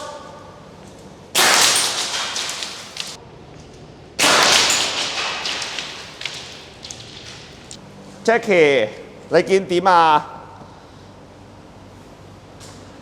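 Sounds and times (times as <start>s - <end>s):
gas grenade blasts hissing: 1.4s - 3.2s.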